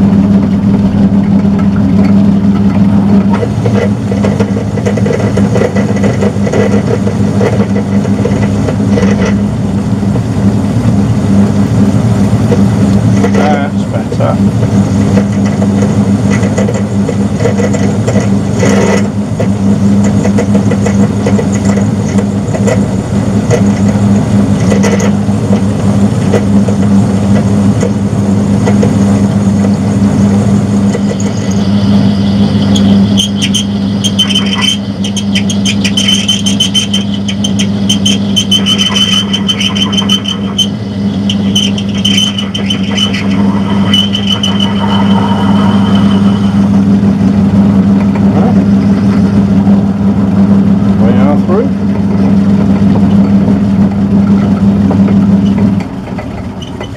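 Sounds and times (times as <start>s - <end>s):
high-pitched whine: 0.0s - 56.9s
metal lathe motor hum: 0.0s - 56.9s
crackles of cutting metal: 1.3s - 9.4s, 30.8s - 46.5s.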